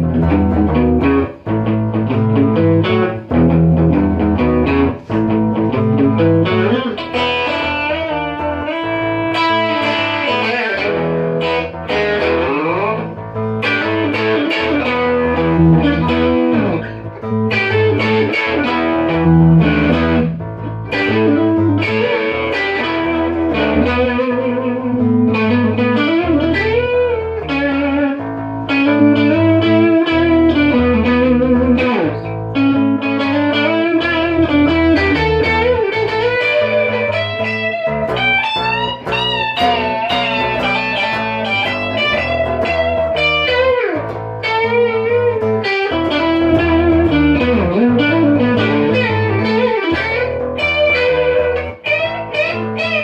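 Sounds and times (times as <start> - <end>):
electric guitar lead: 0.0 - 53.0
sustained bass notes: 0.0 - 53.0.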